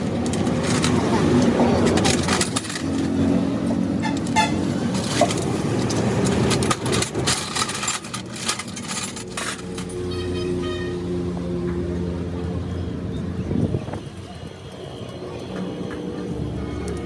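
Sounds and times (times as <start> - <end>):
low rumble of vehicles: 0.0 - 17.0
metallic clinks and knocks: 0.1 - 10.4.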